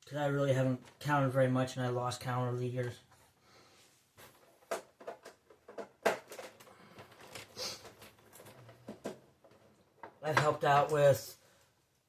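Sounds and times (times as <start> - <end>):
plastic and metal parts clicking: 4.7 - 10.2.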